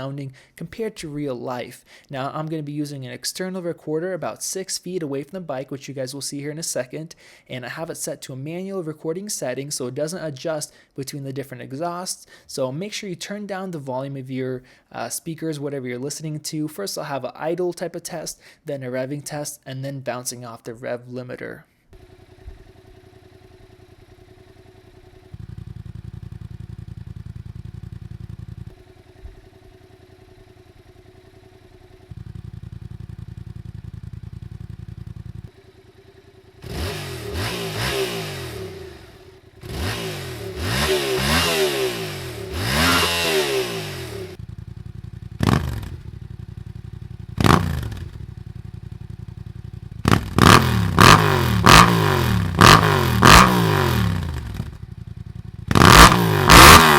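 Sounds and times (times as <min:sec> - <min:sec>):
engine bouncing off rev limiter: 0:22.0 - 0:48.7, 0:49.8 - 0:56.9
motorcycle engine idling and revving: 0:22.0 - 0:56.9.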